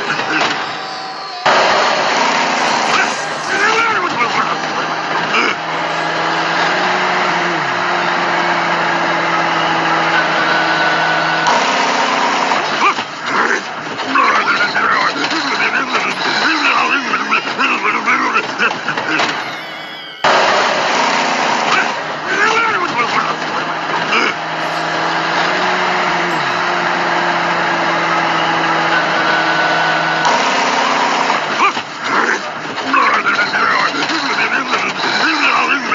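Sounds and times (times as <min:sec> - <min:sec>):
short falling tone: 0:00.0 - 0:10.0, 0:19.1 - 0:20.9, 0:24.2 - 0:29.6
vehicle engine humming: 0:00.0 - 0:32.7.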